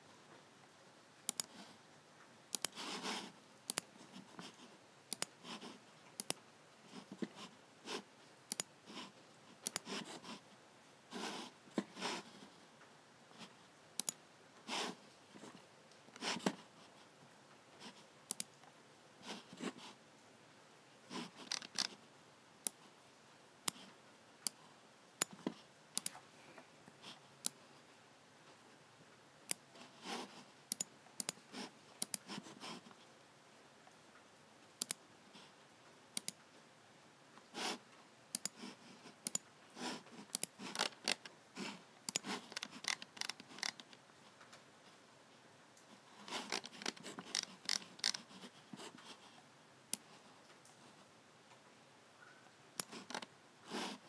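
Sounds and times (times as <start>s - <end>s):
computer mouse buttons clicking: 1.3s - 1.6s, 2.5s - 2.9s, 3.7s - 3.9s, 5.1s - 5.3s, 6.2s - 6.4s, 8.5s - 8.7s, 9.6s - 10.0s, 14.0s - 14.2s, 18.3s - 18.5s, 21.3s - 22.0s, 23.6s - 24.6s, 25.2s - 26.2s, 30.7s - 31.4s, 32.0s - 32.4s, 34.8s - 35.0s, 36.2s - 36.4s, 38.3s - 38.6s, 39.2s - 39.4s, 40.3s - 41.3s, 42.1s - 44.0s, 46.3s - 48.3s, 52.8s - 53.3s.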